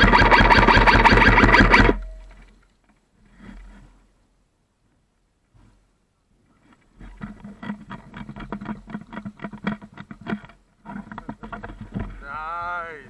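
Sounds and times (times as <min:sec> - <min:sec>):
airsoft gun rapid fire: 0:00.0 - 0:02.0.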